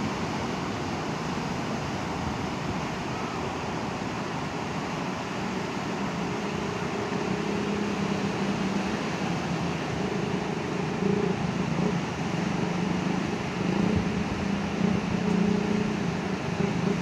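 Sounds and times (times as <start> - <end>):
beach surf rushing: 0.0 - 17.0.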